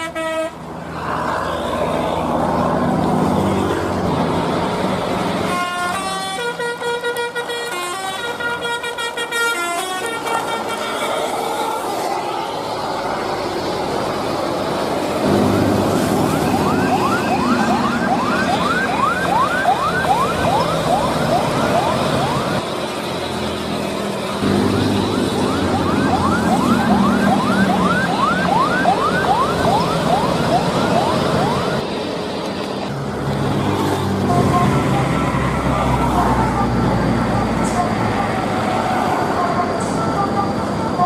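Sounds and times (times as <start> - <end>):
siren yelping: 15.2 - 22.6, 24.4 - 31.8.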